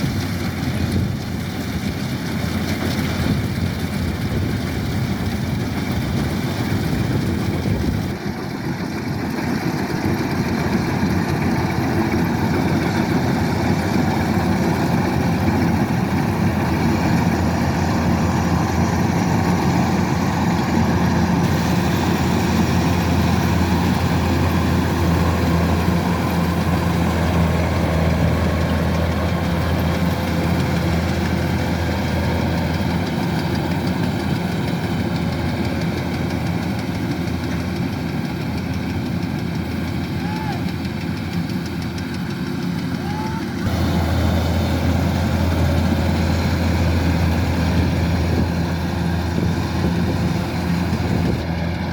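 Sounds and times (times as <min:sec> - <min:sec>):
combine harvester engine droning: 0:00.0 - 0:51.9.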